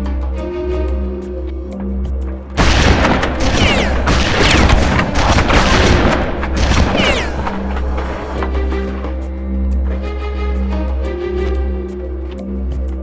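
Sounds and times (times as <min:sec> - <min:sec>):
background music: 0:00.0 - 0:13.0
gunfire and explosions: 0:02.6 - 0:09.1.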